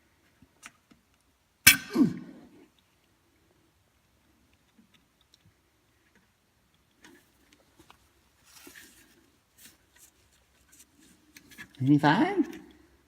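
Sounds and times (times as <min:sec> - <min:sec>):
light handling rustle: 0:04.3 - 0:11.9
faint clicks: 0:04.4 - 0:08.0.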